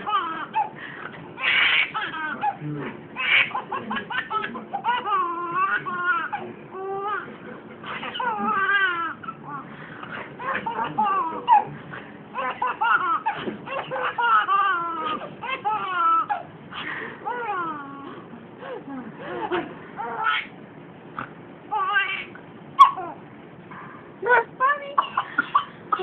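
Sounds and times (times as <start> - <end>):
baby laughing: 0.0 - 0.7, 1.4 - 2.6, 3.2 - 9.6, 10.4 - 11.7, 12.4 - 20.5, 21.7 - 23.2.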